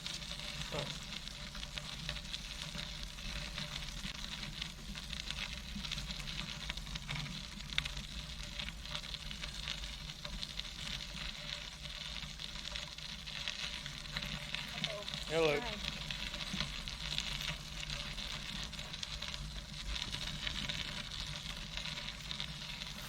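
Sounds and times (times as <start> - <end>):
bicycle tyres rolling on trail: 0.0 - 23.0.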